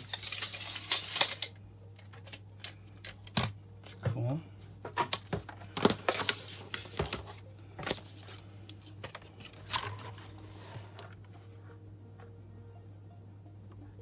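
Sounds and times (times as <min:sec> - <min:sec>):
faint low hum: 0:06.8 - 0:14.0.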